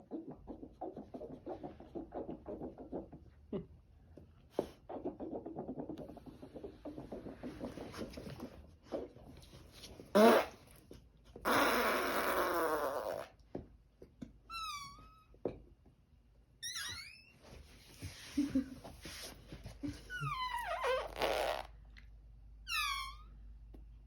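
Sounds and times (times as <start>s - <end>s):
dog whining: 19.9s - 21.0s.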